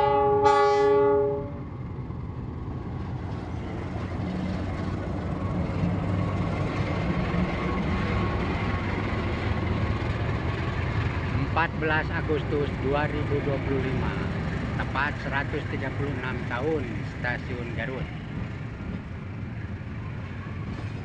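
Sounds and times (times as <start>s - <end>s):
train horn: 0.0s - 1.7s
passing train rumble: 0.0s - 21.0s.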